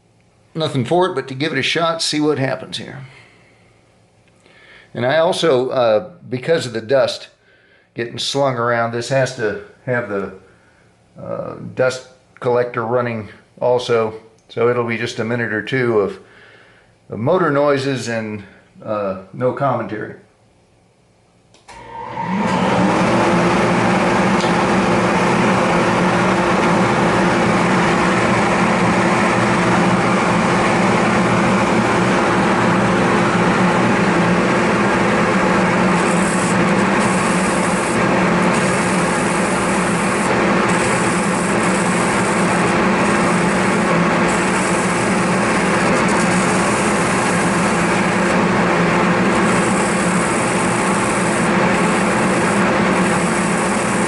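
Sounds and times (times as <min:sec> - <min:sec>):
dust collector running: 0:21.6 - 0:54.0
spinning abrasive wheel motor: 0:21.7 - 0:54.0
high hiss of grinding: 0:33.7 - 0:48.3, 0:49.0 - 0:54.0.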